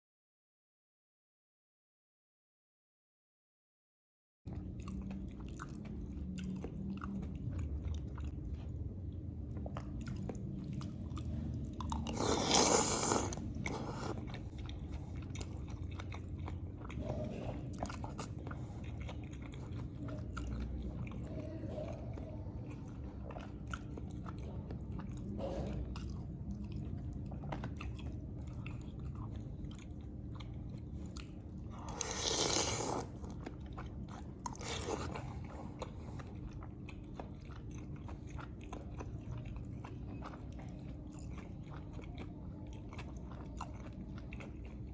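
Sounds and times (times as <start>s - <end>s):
person chewing food: 4.5s - 44.9s
wet mouth sounds: 11.8s - 14.9s, 31.2s - 33.5s.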